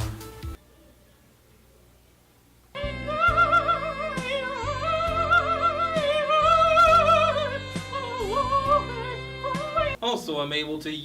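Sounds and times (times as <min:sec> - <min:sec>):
instrumental backing with bass: 0:00.0 - 0:00.6
operatic voice singing: 0:02.8 - 0:10.0.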